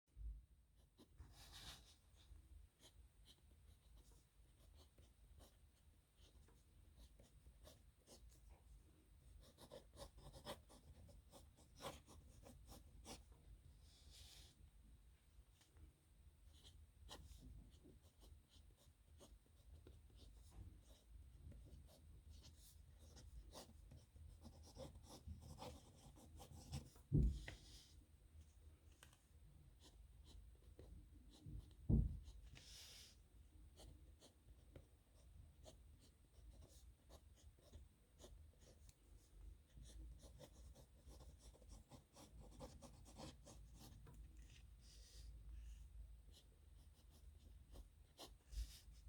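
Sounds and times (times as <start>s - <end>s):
pen scratching on paper: 1.0s - 2.0s, 6.2s - 8.3s, 9.4s - 13.3s, 16.5s - 27.9s, 29.8s - 30.9s, 32.5s - 38.9s, 39.7s - 49.0s
dull thumps: 27.0s - 27.6s.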